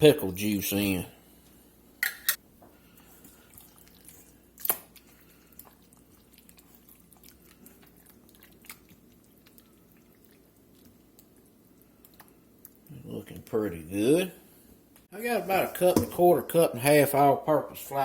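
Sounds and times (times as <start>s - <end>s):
wet squishing of chicken: 3.0s - 13.0s.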